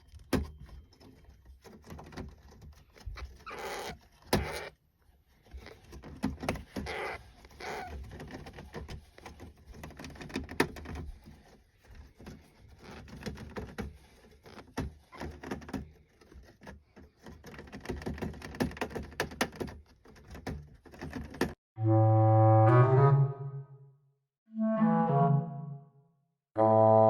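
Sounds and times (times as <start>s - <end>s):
hamster clicks and scratches: 0.0s - 21.6s.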